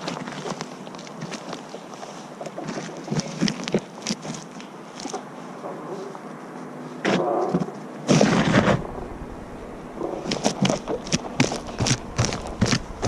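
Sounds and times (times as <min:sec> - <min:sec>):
wind and rubbing on microphone: 0:00.0 - 0:13.0
knocks and thumps of footsteps: 0:10.2 - 0:13.0.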